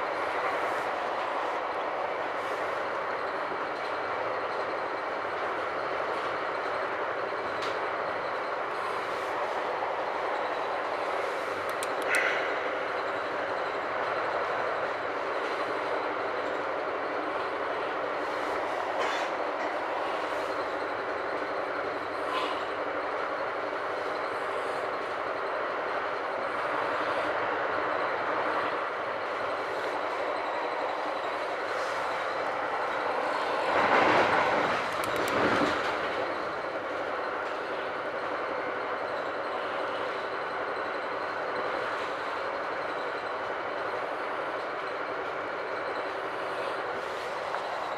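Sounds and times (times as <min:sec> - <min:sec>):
train wheels rumbling on rails: 0:00.0 - 0:47.9
light clicks: 0:11.6 - 0:12.3.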